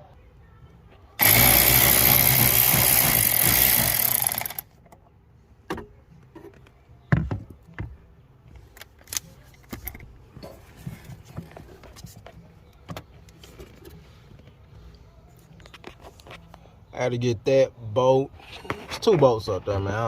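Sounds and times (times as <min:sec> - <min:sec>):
cordless power tool running: 0:01.2 - 0:04.6.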